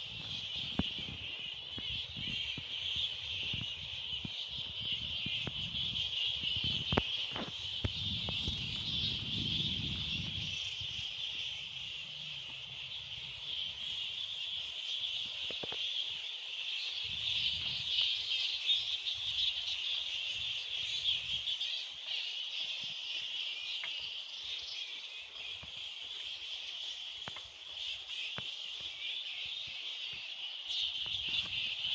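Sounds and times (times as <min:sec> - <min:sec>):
insects trilling: 0:00.0 - 0:31.9.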